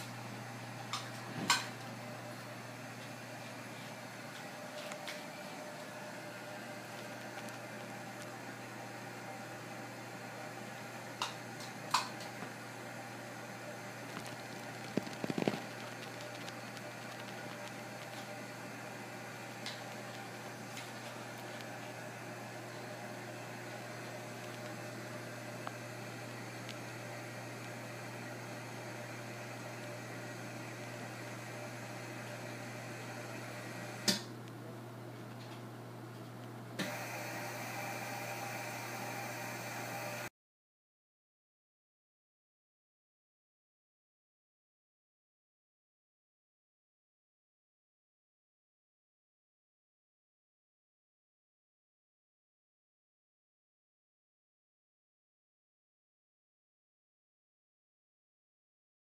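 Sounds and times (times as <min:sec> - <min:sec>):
fan hum and hiss: 0:00.0 - 0:40.3
machine blower hissing: 0:36.8 - 0:40.3.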